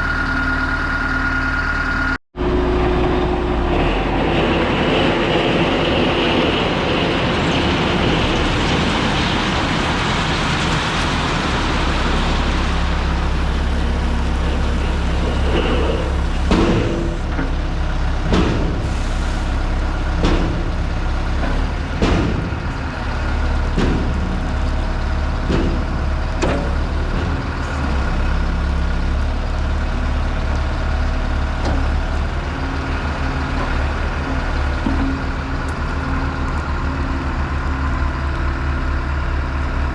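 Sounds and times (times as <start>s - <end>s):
high whine: 0.0s - 8.7s
diesel engine running: 0.0s - 39.9s
sharp knocks: 21.5s - 22.7s.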